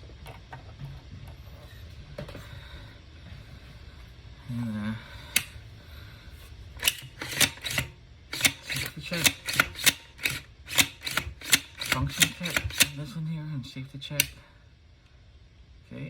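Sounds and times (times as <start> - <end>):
metal parts clicking together: 6.8 - 13.0.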